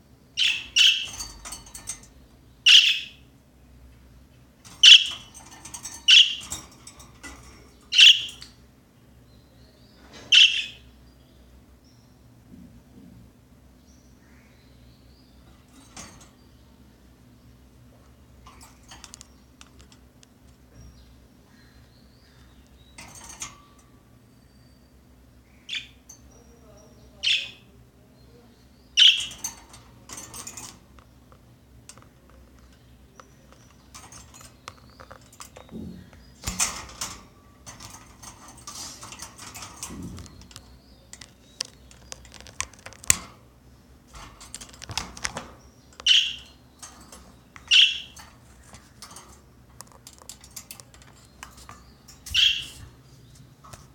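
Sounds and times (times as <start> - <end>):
clicks and rustling: 0.8 - 2.2, 4.6 - 8.6, 15.5 - 16.4, 18.0 - 20.8, 22.6 - 23.9, 29.0 - 53.9
budgerigar chirping: 2.7 - 3.2, 4.8 - 5.1, 10.4 - 10.8, 46.0 - 46.5, 47.7 - 48.2, 52.4 - 52.8.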